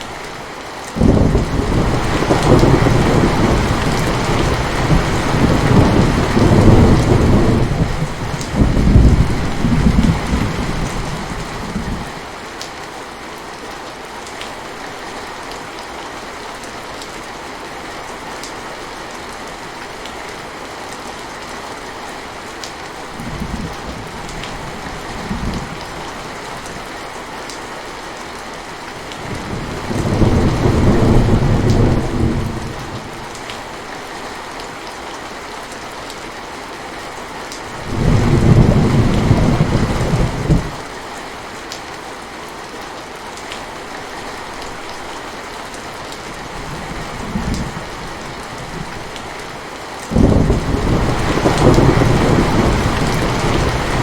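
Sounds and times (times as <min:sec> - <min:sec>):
steady rain falling: 0:00.0 - 0:54.0
thunder rumbling: 0:01.0 - 0:12.1, 0:29.2 - 0:33.2, 0:37.8 - 0:40.8, 0:50.1 - 0:54.0.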